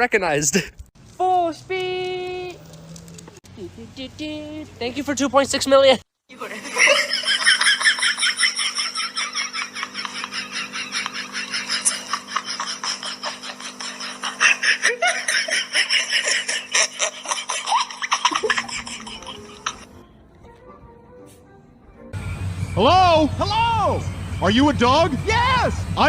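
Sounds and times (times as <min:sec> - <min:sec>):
rapid high laughter: 0:06.5 - 0:20.0.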